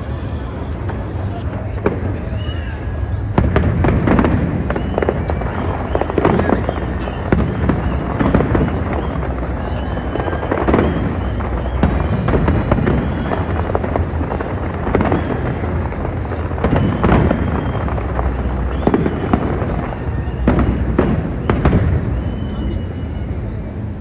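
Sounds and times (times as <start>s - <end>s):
fireworks bangs and crackling: 0.0s - 24.0s
low rumble: 0.0s - 24.0s.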